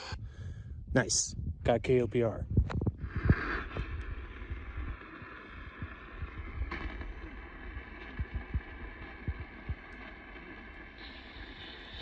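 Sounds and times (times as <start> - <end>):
low rumble: 0.0 - 12.0
radio static hiss: 3.0 - 12.0.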